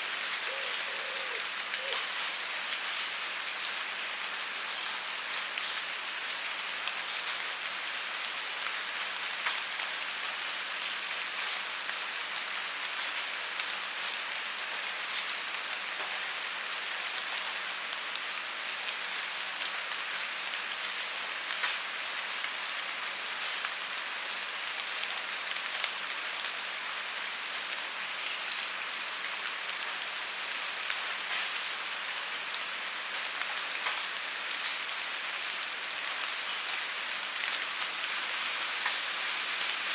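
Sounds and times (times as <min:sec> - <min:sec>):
rain hissing: 0:00.0 - 0:08.3, 0:25.8 - 0:39.9.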